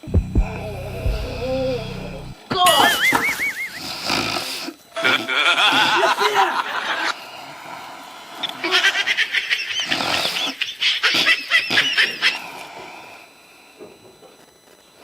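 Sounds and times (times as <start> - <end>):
comic snoring: 0.0 - 2.4, 3.7 - 6.1.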